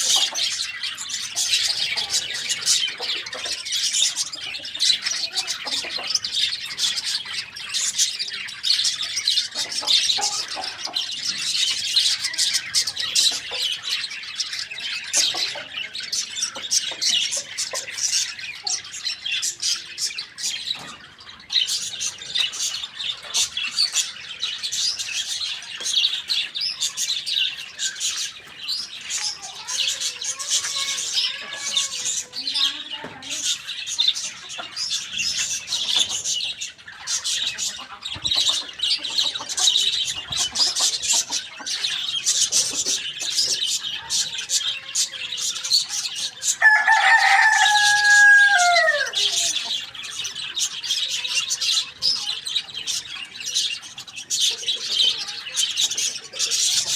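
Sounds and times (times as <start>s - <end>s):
small birds chirping: 0.0s - 56.9s
lower wavering bird calls: 44.6s - 50.0s.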